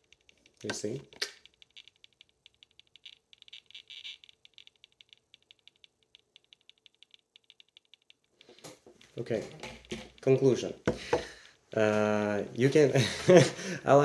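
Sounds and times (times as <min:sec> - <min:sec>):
meter rapid ticking: 0:01.4 - 0:08.6.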